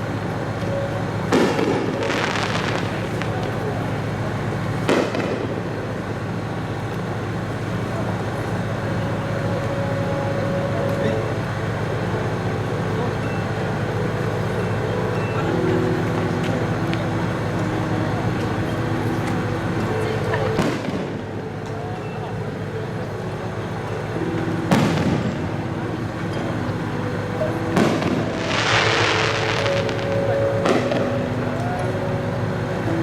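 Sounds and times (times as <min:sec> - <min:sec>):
crowd chatter: 0:00.0 - 0:33.0
firework bursting with a bang: 0:01.3 - 0:03.7, 0:04.8 - 0:05.7.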